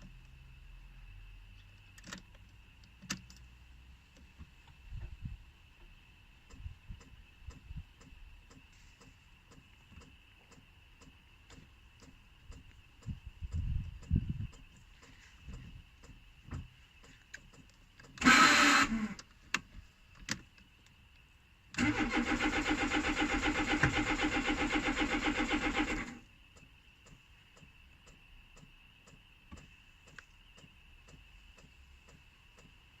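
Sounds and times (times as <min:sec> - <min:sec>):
starter motor cranking engine: 0:18.2 - 0:19.2, 0:21.8 - 0:26.2.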